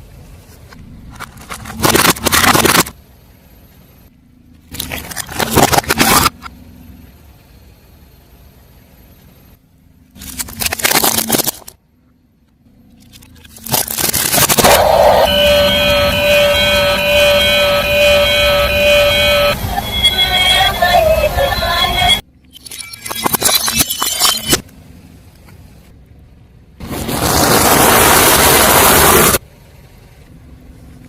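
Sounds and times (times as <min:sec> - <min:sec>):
car tyre crushing crunchy objects: 0:00.7 - 0:03.0, 0:04.6 - 0:06.6, 0:10.1 - 0:11.8, 0:12.9 - 0:15.2, 0:26.8 - 0:29.4.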